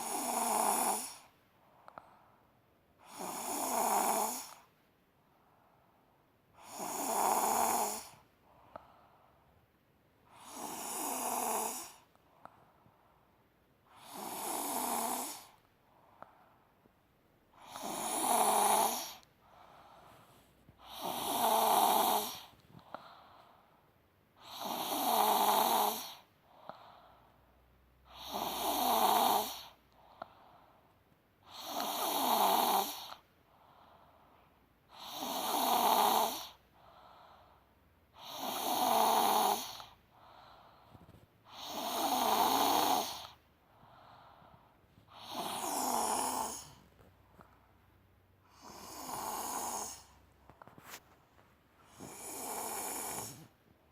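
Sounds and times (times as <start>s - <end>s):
loud rasping snores: 0.0s - 1.3s, 3.0s - 4.6s, 6.6s - 8.2s, 10.3s - 12.0s, 13.9s - 15.6s, 17.6s - 19.2s, 20.8s - 22.5s, 24.4s - 26.3s, 28.1s - 29.8s, 31.4s - 33.2s, 34.9s - 36.6s, 38.2s - 40.0s, 41.5s - 43.4s, 45.1s - 46.8s, 48.4s - 50.2s, 51.8s - 53.6s
quiet breath: 0.0s - 53.9s.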